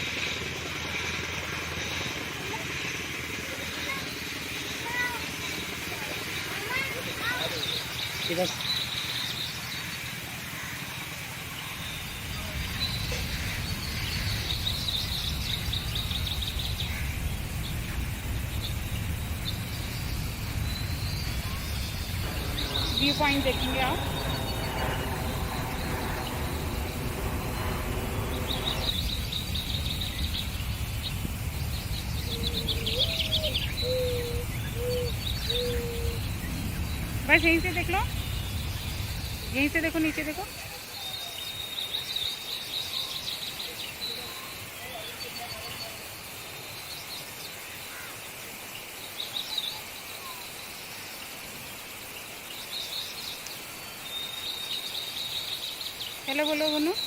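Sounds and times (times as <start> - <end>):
steady low rumble: 0.0 - 40.8
background hiss: 0.0 - 57.0
birds chirping: 0.0 - 57.0
high insect drone: 0.0 - 57.0
low whistled notes: 17.7 - 40.0.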